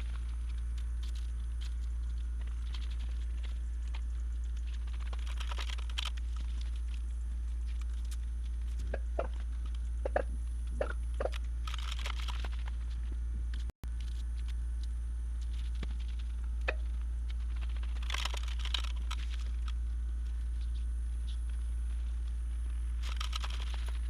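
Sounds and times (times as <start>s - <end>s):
low hum: 0.0s - 24.0s
tarp crinkling and rustling: 4.6s - 7.0s, 11.6s - 12.9s, 17.6s - 19.7s.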